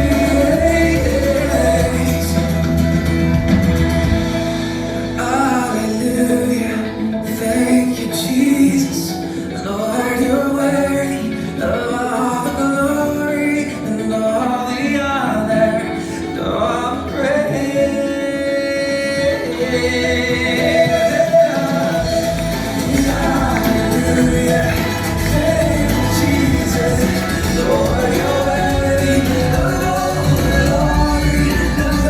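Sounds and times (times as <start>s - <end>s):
heavy bass: 0.0s - 7.0s, 19.2s - 32.0s
christian song with singing: 0.0s - 32.0s.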